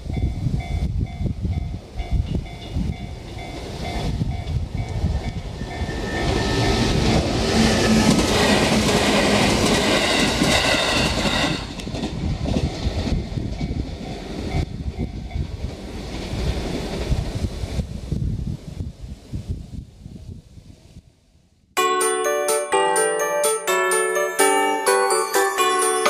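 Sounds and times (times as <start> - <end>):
train wheels clattering over rails: 2.3 - 17.3.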